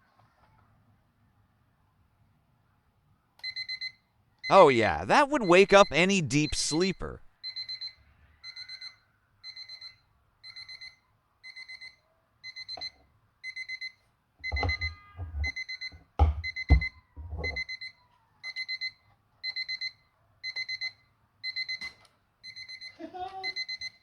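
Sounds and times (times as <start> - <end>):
alarm clock beeping: 13.5 - 17.9.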